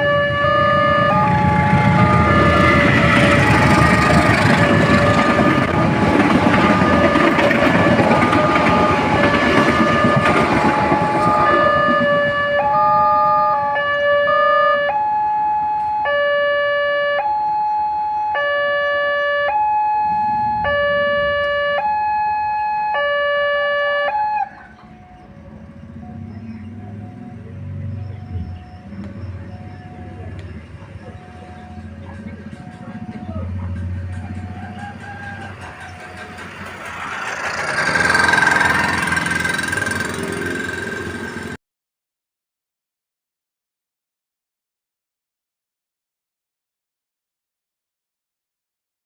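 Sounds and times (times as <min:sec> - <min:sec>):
passing train rumble: 0:00.0 - 0:16.0, 0:18.8 - 0:41.6
level crossing warning alarms: 0:00.0 - 0:41.6.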